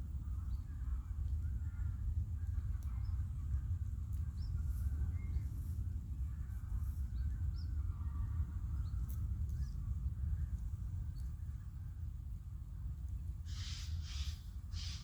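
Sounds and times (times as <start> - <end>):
wind buffeting microphone: 0.0 - 15.0
small birds chirping: 13.5 - 15.0.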